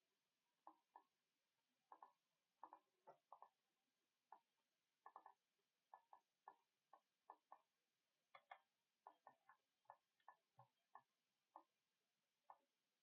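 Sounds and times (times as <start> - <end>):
faint computer mouse clicks: 8.3 - 11.7.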